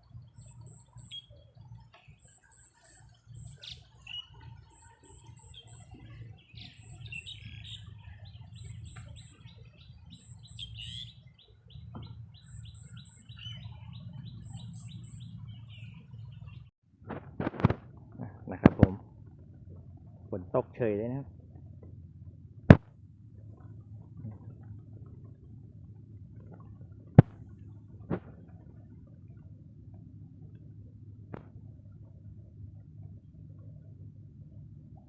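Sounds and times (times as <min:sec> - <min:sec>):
small birds chirping: 0:00.1 - 0:16.7
wind rumble on microphone: 0:03.3 - 0:35.0.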